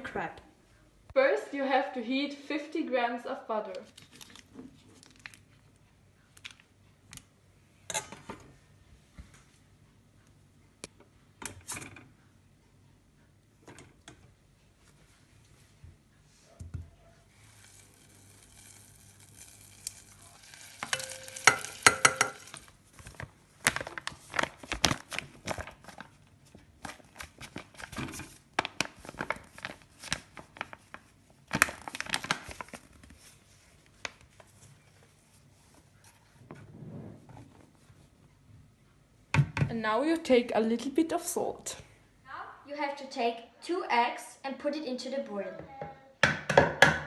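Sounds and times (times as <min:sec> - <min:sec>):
packaging crinkling: 0:03.8 - 0:05.6, 0:17.6 - 0:33.3
utensils and dishes clattering: 0:20.8 - 0:22.6.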